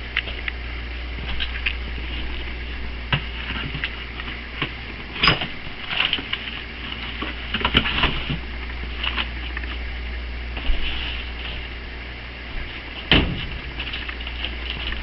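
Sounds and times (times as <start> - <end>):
low freezer hum: 0.0 - 15.0
freezer baskets knocking: 12.7 - 15.0.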